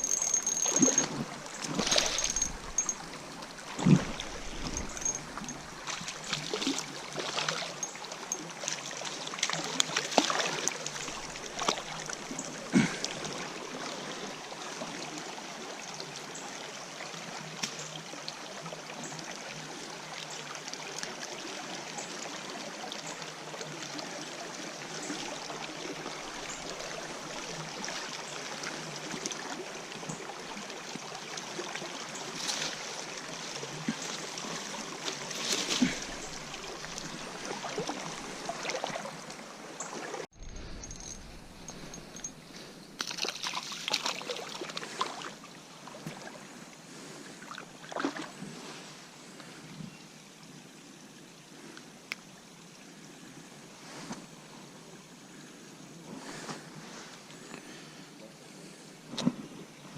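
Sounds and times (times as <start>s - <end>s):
river water rushing: 0.0s - 14.8s, 30.4s - 46.4s.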